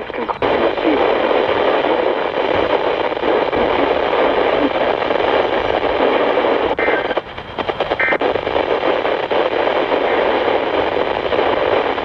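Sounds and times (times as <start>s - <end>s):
radio clicks: 0.0s - 12.0s
radio static hiss: 0.0s - 12.0s.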